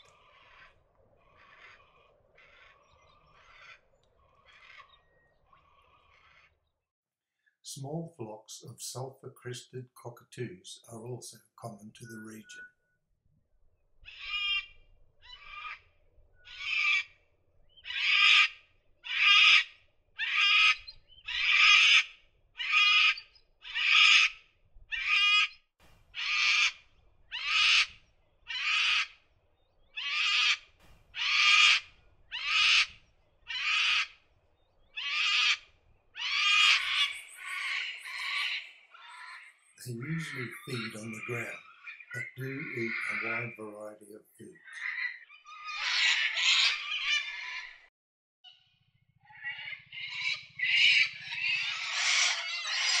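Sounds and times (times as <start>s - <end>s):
cockatoos screeching: 0.0s - 4.9s, 16.5s - 17.1s, 17.8s - 25.5s, 26.2s - 29.1s, 30.0s - 34.2s, 35.0s - 35.6s, 36.2s - 43.6s, 44.6s - 47.8s, 49.3s - 53.0s.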